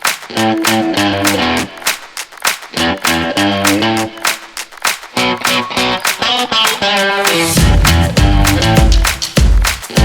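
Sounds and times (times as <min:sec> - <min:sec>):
instrumental music with beat: 0:00.0 - 0:10.0
heavy bass and drums: 0:07.6 - 0:10.0.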